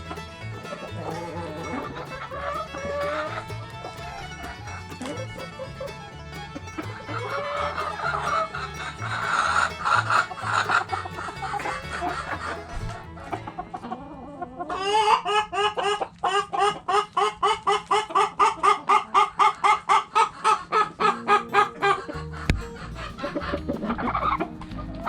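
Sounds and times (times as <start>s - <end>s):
background music with bass: 0.0s - 14.0s, 21.2s - 25.0s
hens clucking: 0.0s - 25.0s.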